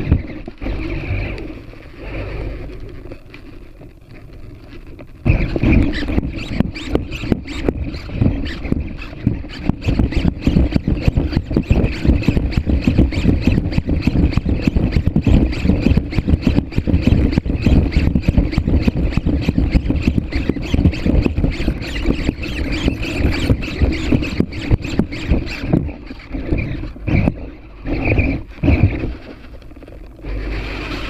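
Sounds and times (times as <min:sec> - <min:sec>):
robot servos whining: 0:05.2 - 0:31.0
robot feet clicking and tapping: 0:05.3 - 0:29.0.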